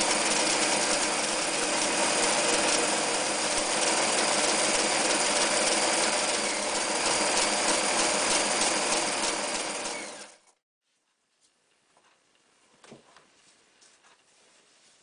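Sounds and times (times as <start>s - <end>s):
sewing machine stitching: 0.0s - 10.6s.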